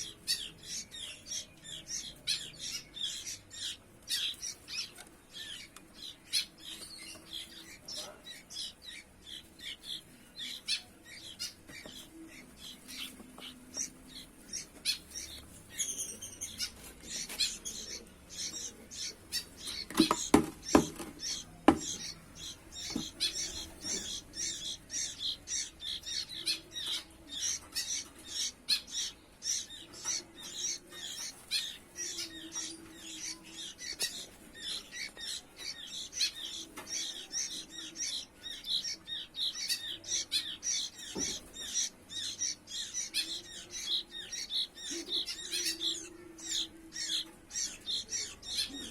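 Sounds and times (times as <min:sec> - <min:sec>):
bird chicks begging chirps: 0:00.0 - 0:48.9
sharp knocks: 0:19.9 - 0:22.0.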